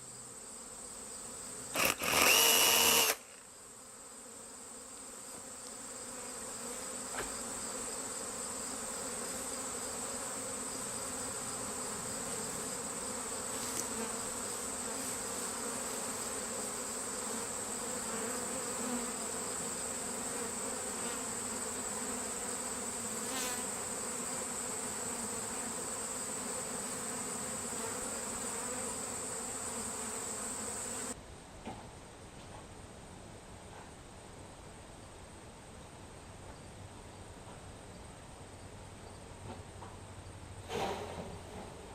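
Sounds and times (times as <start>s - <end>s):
honeybee swarm buzzing: 0.2s - 31.2s.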